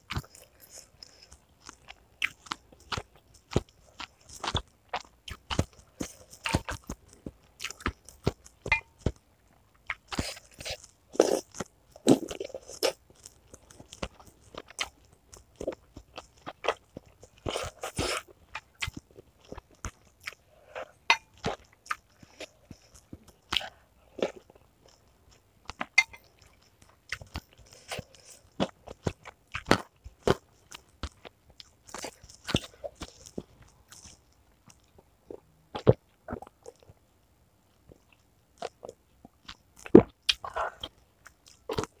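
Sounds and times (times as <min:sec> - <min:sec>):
chewing and crunching food: 0:00.0 - 0:42.0.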